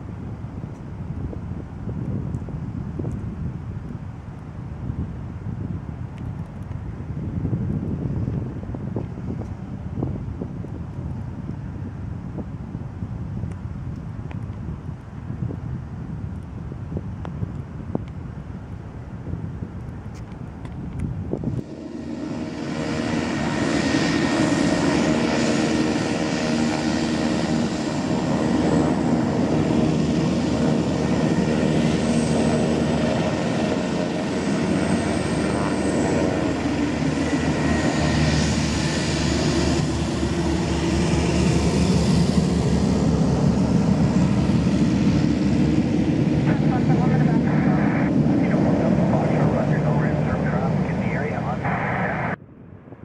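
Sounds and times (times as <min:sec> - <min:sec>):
aircraft engines droning: 0:16.4 - 0:53.0.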